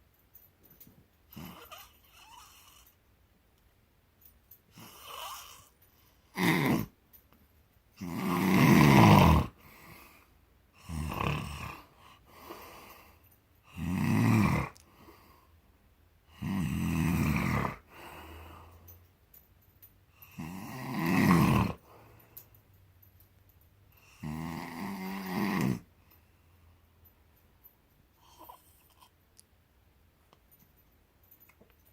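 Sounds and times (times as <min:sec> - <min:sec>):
quiet breathing: 0:00.0 - 0:03.1, 0:04.2 - 0:06.4, 0:09.5 - 0:13.9, 0:14.6 - 0:20.4, 0:21.7 - 0:24.2, 0:25.2 - 0:29.4
man snoring: 0:01.4 - 0:02.9, 0:04.8 - 0:05.7, 0:06.4 - 0:06.9, 0:08.0 - 0:09.6, 0:10.8 - 0:12.9, 0:13.7 - 0:14.8, 0:16.3 - 0:18.2, 0:20.2 - 0:21.9, 0:24.0 - 0:25.9.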